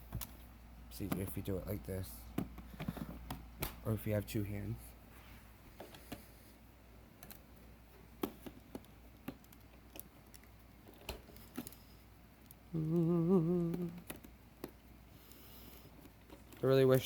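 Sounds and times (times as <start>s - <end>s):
person humming: 12.7s - 14.2s.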